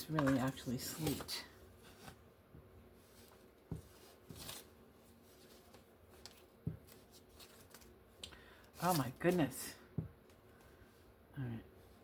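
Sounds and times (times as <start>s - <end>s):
paper rustling: 3.0s - 7.9s.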